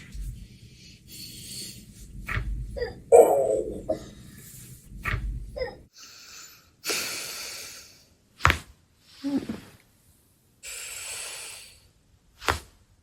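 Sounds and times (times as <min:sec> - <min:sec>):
person breathing: 0:00.3 - 0:02.1, 0:05.9 - 0:08.2, 0:10.6 - 0:12.0.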